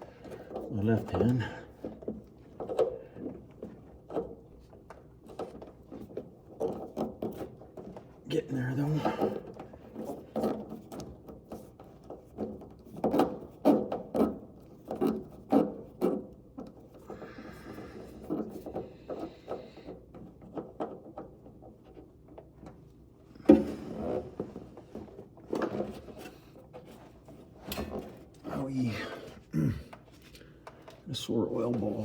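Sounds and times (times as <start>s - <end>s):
knocks and scraping on car parts: 8.9s - 17.0s.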